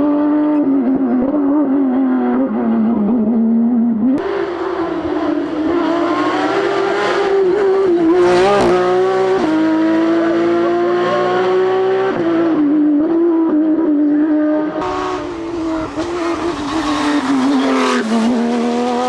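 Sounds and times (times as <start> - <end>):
tyres on gravel: 4.2 - 9.1, 14.8 - 19.0
car engine revving high: 4.2 - 12.1, 14.6 - 19.0.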